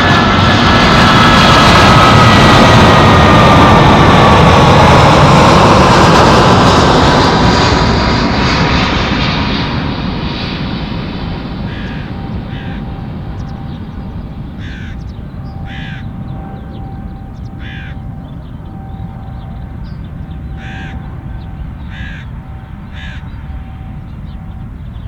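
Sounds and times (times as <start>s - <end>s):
steady low rumble: 0.0s - 25.0s
crow cawing: 11.5s - 13.5s, 14.4s - 16.2s, 17.5s - 18.2s, 20.5s - 23.4s.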